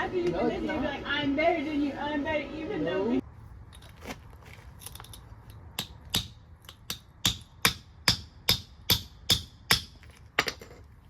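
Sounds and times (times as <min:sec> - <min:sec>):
hammer striking metal: 0:05.8 - 0:10.6.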